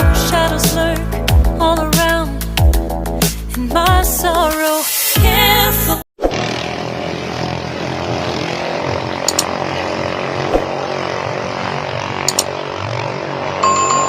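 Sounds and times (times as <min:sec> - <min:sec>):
boat engines running: 0:06.4 - 0:14.0
short clicks: 0:09.2 - 0:09.5, 0:12.3 - 0:12.5.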